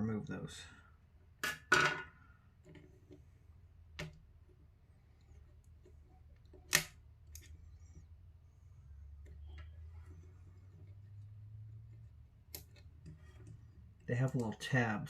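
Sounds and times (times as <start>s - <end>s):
small plastic clicks: 5.2s - 8.0s.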